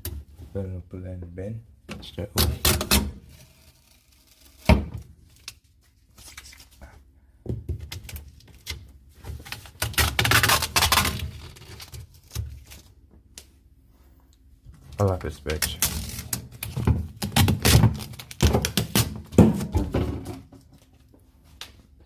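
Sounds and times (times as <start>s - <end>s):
packing material rustling and tearing: 9.4s - 13.0s, 15.2s - 19.3s.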